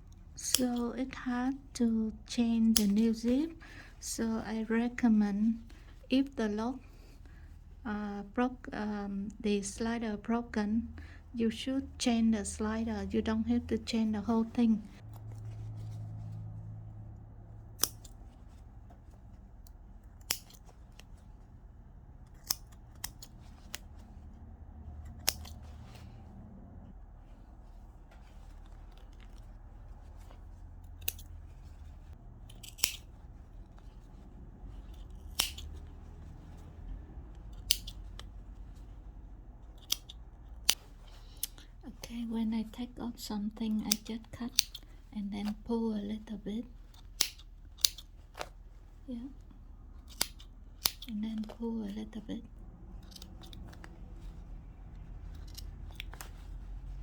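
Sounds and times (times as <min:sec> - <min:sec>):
scissors snipping threads: 0:00.1 - 0:01.6, 0:02.3 - 0:03.6, 0:17.7 - 0:18.3, 0:19.6 - 0:21.2, 0:22.2 - 0:24.1, 0:24.9 - 0:26.0, 0:30.1 - 0:31.5, 0:32.4 - 0:33.1, 0:34.8 - 0:36.1, 0:36.8 - 0:38.4, 0:39.7 - 0:42.3, 0:43.6 - 0:45.7, 0:46.9 - 0:48.6, 0:49.2 - 0:52.2, 0:53.0 - 0:54.0, 0:55.3 - 0:56.4.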